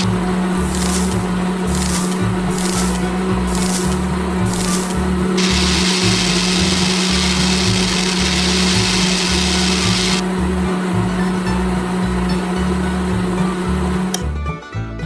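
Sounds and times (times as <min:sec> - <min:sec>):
background music with bass: 0:00.0 - 0:15.0
small electric motor whirring: 0:00.6 - 0:10.2.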